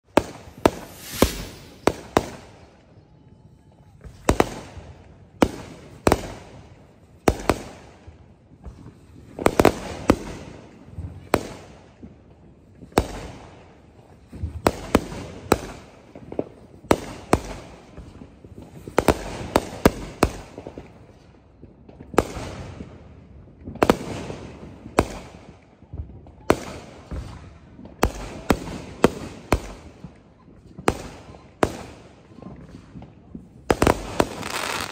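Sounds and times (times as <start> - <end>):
fireworks bursting with echoes: 0.0 - 23.0, 23.6 - 34.9.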